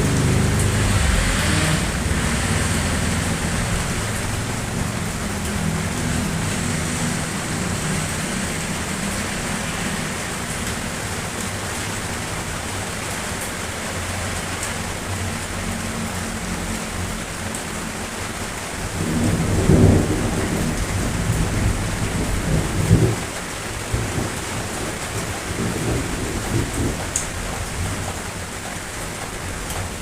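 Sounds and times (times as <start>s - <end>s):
steady rain hiss: 0.0s - 30.0s.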